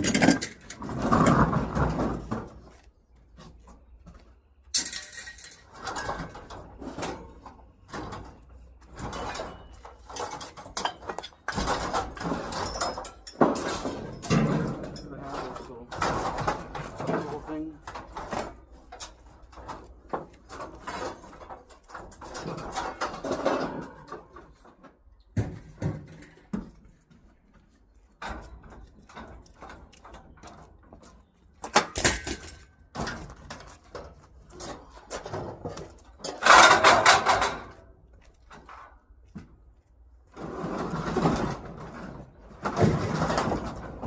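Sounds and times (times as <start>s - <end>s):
scrap objects rattling: 0.0s - 2.8s, 4.8s - 25.0s, 40.3s - 44.0s
scraping clatter: 0.0s - 2.8s, 4.7s - 26.6s, 40.3s - 44.0s.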